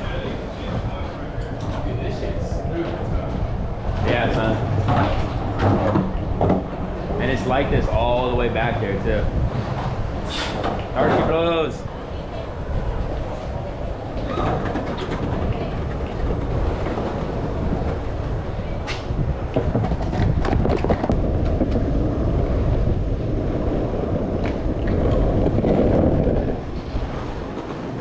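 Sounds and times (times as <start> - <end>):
skateboard wheels rolling on pavement: 0.0 - 28.0
skateboard wheels clacking over cracks: 14.0 - 18.2, 18.8 - 22.8, 23.5 - 28.0.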